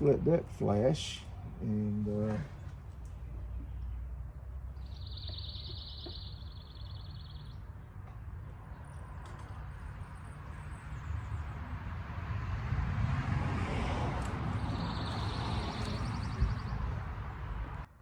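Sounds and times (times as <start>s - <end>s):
low outdoor rumble: 0.0s - 18.0s
bird trilling: 4.8s - 7.6s, 14.6s - 16.8s.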